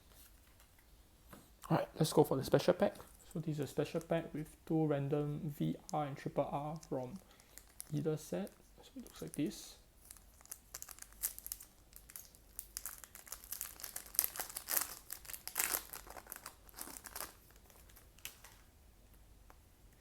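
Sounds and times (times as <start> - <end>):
wrapper crinkling: 5.6 - 18.7.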